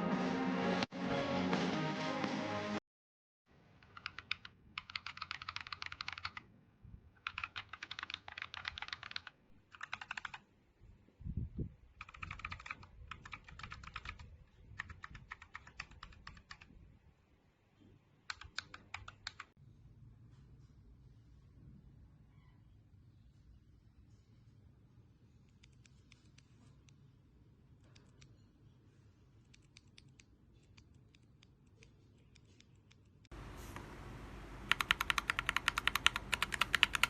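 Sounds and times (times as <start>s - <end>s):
mechanical keyboard key clacks: 3.8s - 6.4s, 7.2s - 10.4s, 12.0s - 16.7s, 34.7s - 37.0s.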